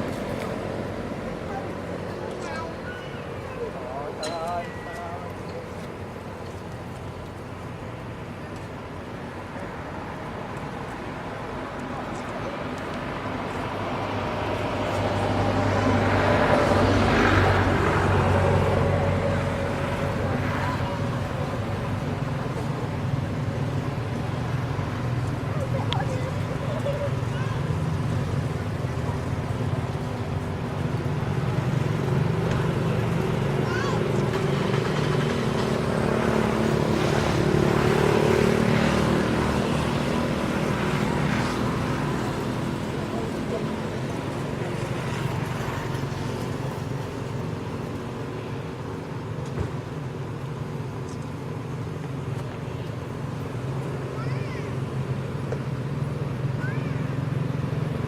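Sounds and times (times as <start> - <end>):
vehicle passing by: 12.2 - 48.7.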